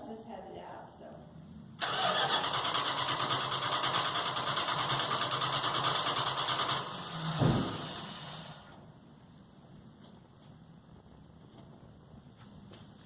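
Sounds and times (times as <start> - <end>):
engine cranking on starter: 1.8 - 8.8.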